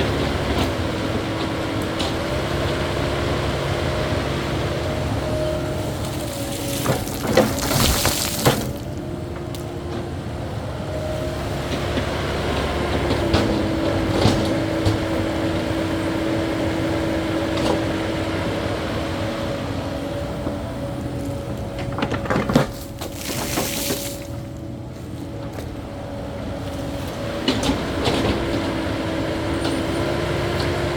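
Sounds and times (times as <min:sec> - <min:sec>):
diesel engine and hydraulics: 0:00.0 - 0:30.9
bucket digging dirt and rock: 0:05.7 - 0:09.0, 0:22.4 - 0:24.4.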